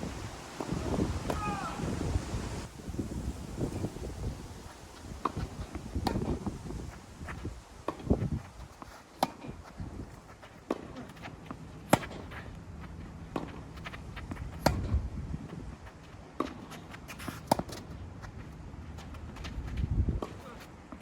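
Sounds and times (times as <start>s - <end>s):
strong wind on microphone: 0.0s - 8.6s, 14.6s - 15.8s, 19.5s - 20.2s
tennis ball struck and bouncing: 5.2s - 6.5s, 9.2s - 9.6s, 10.7s - 12.4s, 14.3s - 15.0s, 16.4s - 17.9s.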